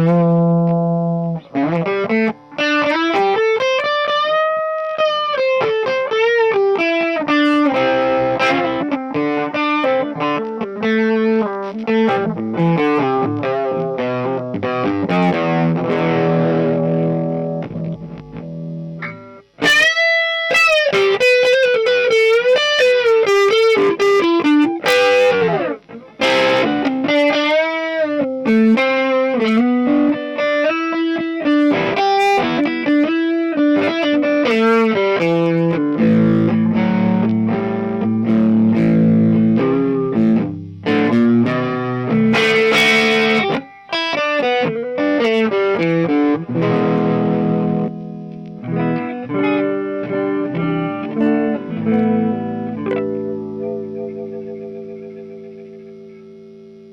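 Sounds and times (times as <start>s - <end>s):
electric guitar playing: 0.0s - 56.9s.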